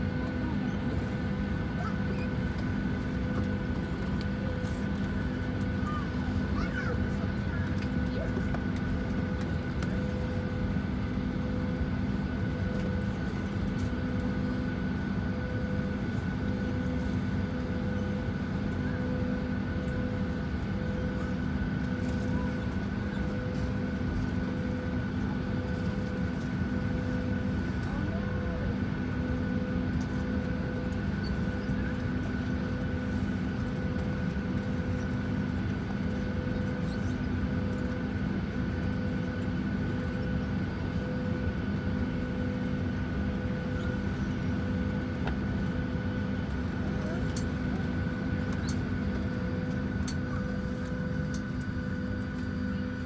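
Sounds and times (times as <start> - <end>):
airplane cabin rumble and whine: 0.0 - 53.0.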